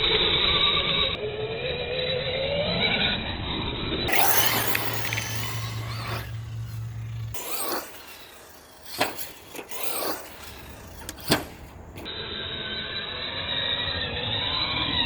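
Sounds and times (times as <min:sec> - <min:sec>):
rc car motor and tyres running: 0:04.1 - 0:12.1
sharp knocks and clatter: 0:04.1 - 0:12.1.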